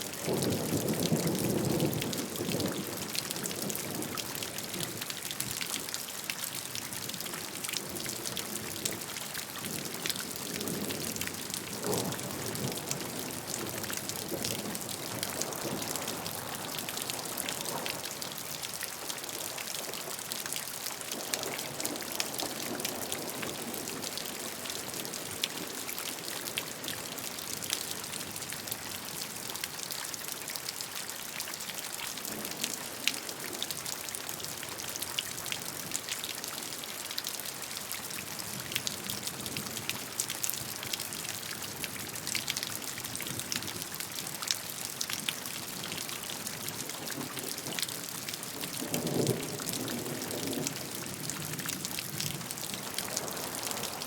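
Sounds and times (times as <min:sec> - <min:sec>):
raindrops ticking close by: 0:00.0 - 0:54.0
steady rainfall hiss: 0:42.8 - 0:54.0.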